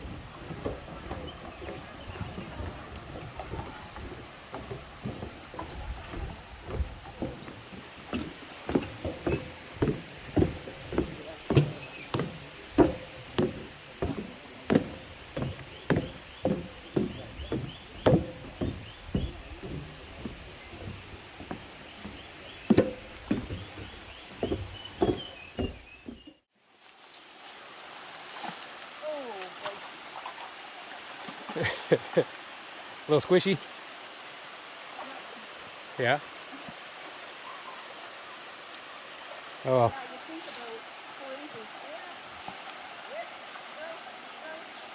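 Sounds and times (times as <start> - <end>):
footsteps down stairs: 0.0 - 26.4.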